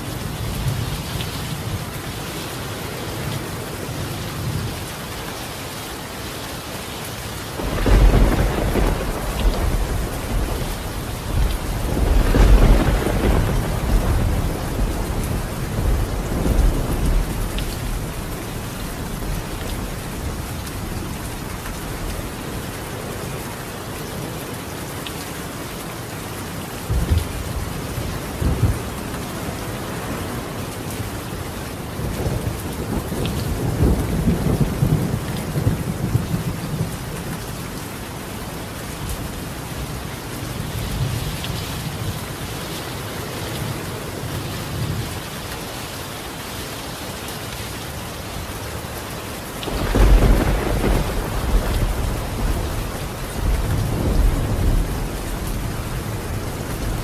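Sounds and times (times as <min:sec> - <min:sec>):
rain drumming on a tile roof: 0:00.0 - 0:57.0
thunder rolling: 0:07.6 - 0:18.4, 0:49.7 - 0:57.0
low thunder rumbles: 0:07.6 - 0:22.7, 0:49.6 - 0:57.0.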